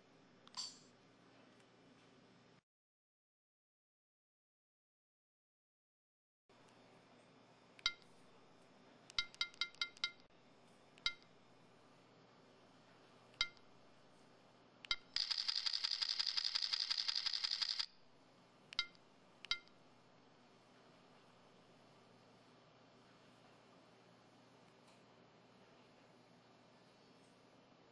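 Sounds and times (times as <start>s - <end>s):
mobile phone key beeps: 9.1s - 10.2s, 11.0s - 11.2s, 18.8s - 19.7s.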